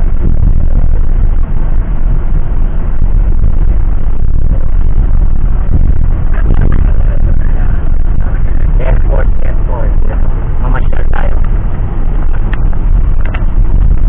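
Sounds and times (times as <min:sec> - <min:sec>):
vehicle interior low rumble: 0:00.0 - 0:14.0.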